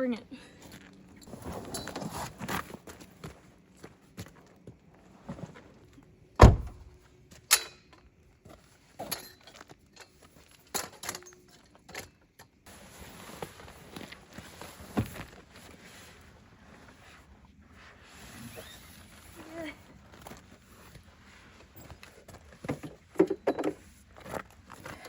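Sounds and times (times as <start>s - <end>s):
loud thump: 6.4s - 6.9s.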